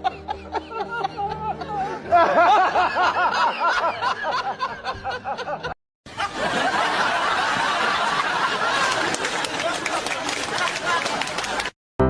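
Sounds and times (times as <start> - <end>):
person laughing: 0.0 - 5.8.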